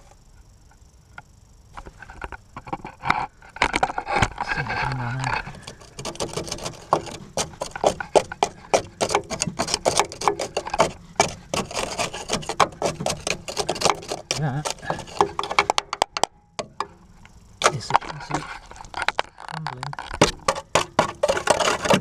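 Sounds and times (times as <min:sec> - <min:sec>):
rust crackling off steel: 0:02.0 - 0:16.9, 0:17.6 - 0:22.0.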